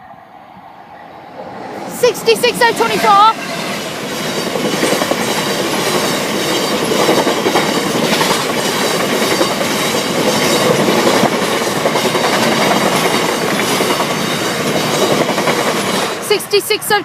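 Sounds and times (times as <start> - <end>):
freight train wheels clattering: 2.8 - 16.2.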